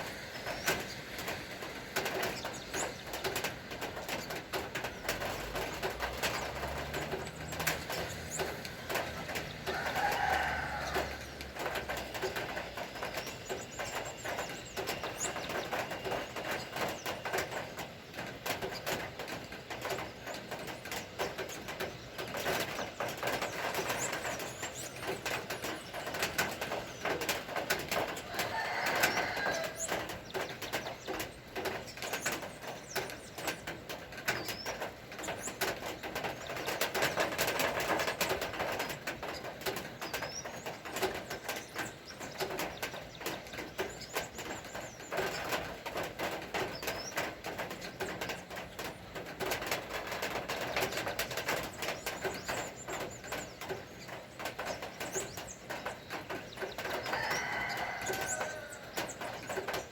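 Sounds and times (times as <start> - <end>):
birds chirping: 0.0 - 59.9
rain falling: 0.0 - 59.9.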